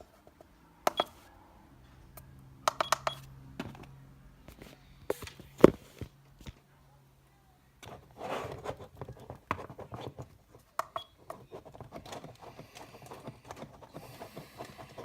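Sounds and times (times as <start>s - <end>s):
clicks and taps: 2.6s - 3.2s, 10.7s - 14.7s.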